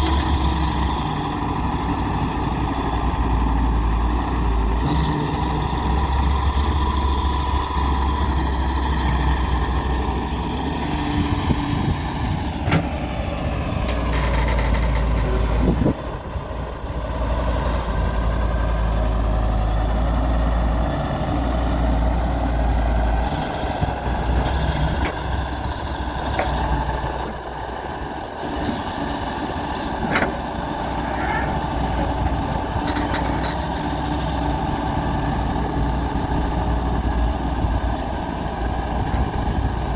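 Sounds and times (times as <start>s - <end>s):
excavator diesel engine: 0.0s - 39.9s.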